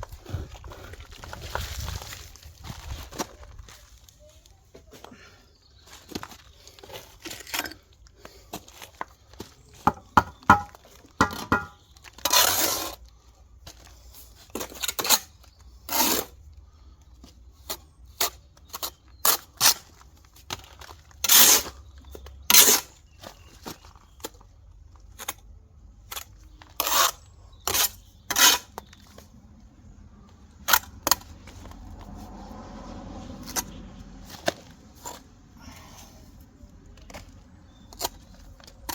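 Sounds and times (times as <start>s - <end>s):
trowel clinking on blocks: 9.9s - 11.8s
trowel scraping mortar: 9.9s - 13.0s, 14.6s - 16.4s, 21.2s - 21.8s, 22.5s - 23.0s, 26.1s - 28.9s.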